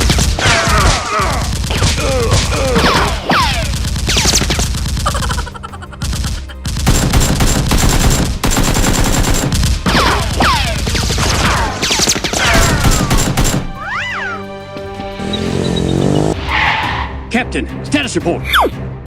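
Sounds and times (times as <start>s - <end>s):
background music with low drone: 0.0s - 19.0s
automatic gunfire: 6.2s - 11.3s, 12.0s - 13.7s.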